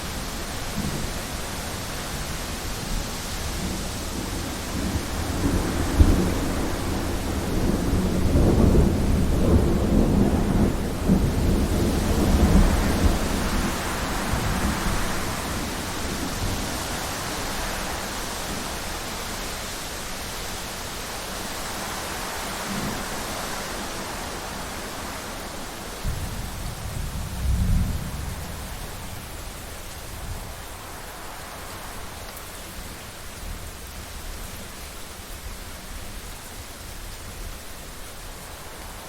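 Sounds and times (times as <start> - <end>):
heavy rain: 0.0 - 39.0
thunder rumbling: 3.5 - 17.3, 26.0 - 29.4.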